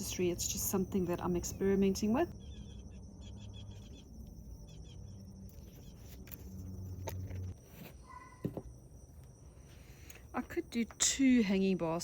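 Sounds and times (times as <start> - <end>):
soft chirping: 1.5 - 8.5.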